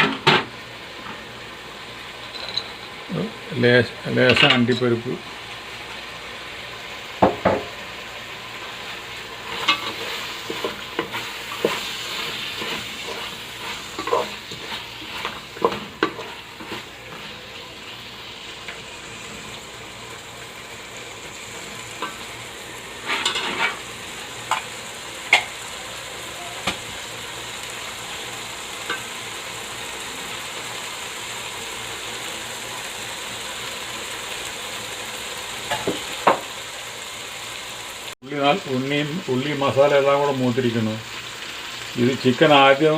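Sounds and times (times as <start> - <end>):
food sizzling in a frying pan: 0.0 - 42.9
spoon knocking and scraping pan: 7.2 - 7.8, 9.5 - 17.3, 23.0 - 23.8, 25.3 - 25.5.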